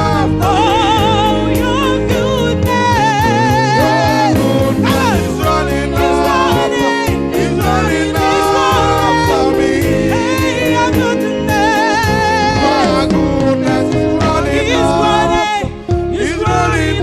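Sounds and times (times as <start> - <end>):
person singing with vibrato: 0.0 - 17.0
steady beat: 0.2 - 6.1, 8.3 - 16.6.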